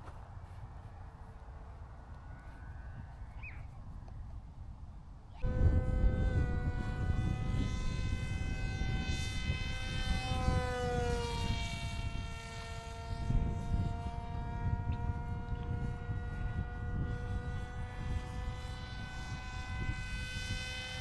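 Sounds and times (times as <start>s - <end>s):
wind rumbling on microphone: 0.0s - 21.0s
model jet motor whining: 5.3s - 21.0s.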